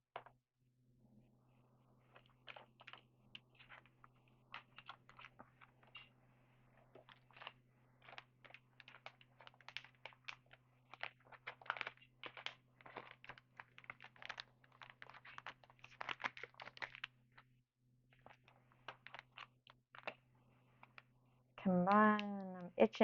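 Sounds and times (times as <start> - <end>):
cards flipping and clicking: 2.1 - 6.1, 6.8 - 17.5, 18.2 - 21.1.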